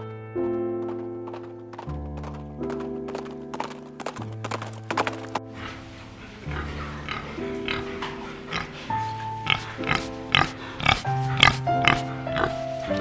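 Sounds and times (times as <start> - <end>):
background music with held notes: 0.0 - 13.0
pig grunting: 5.5 - 13.0.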